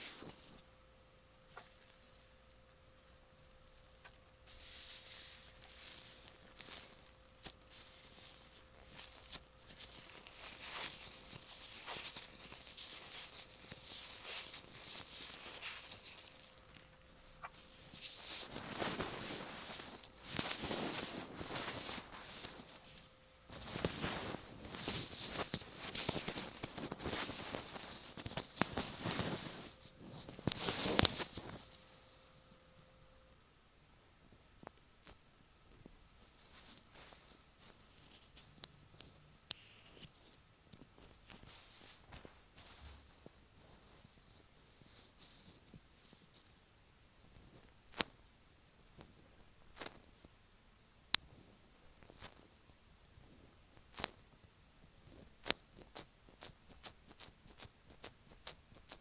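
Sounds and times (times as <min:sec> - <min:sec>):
gloved fingers rustling on microphone: 0:03.9 - 0:32.3.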